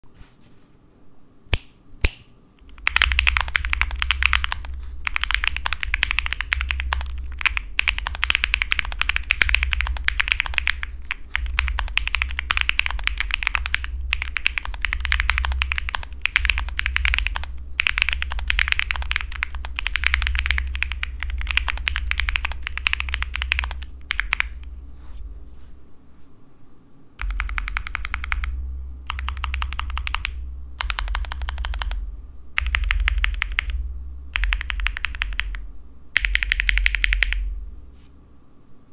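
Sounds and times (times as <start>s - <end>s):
rapid mechanical keyboard typing: 2.6s - 24.6s, 27.2s - 32.0s, 32.6s - 33.8s, 34.4s - 35.6s, 36.2s - 37.5s.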